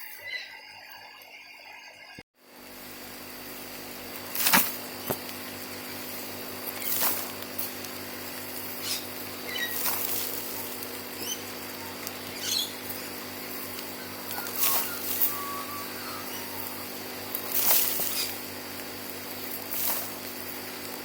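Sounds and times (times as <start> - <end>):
soil being dug and scraped: 17.3 - 18.4.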